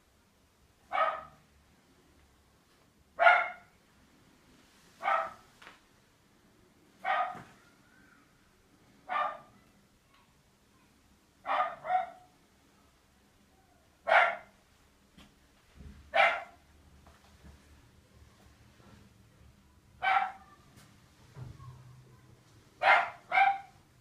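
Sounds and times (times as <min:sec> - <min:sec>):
dog barking: 0:00.9 - 0:01.4, 0:03.2 - 0:03.7, 0:05.0 - 0:05.5, 0:07.0 - 0:07.6, 0:09.0 - 0:09.6, 0:11.4 - 0:12.3, 0:14.0 - 0:14.5, 0:16.1 - 0:16.6, 0:20.0 - 0:20.6, 0:22.8 - 0:23.8.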